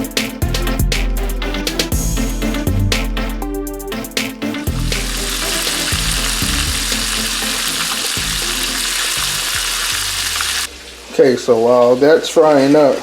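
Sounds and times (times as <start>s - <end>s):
background music with a beat: 0.0s - 10.0s
food sizzling in hot oil: 4.7s - 13.0s.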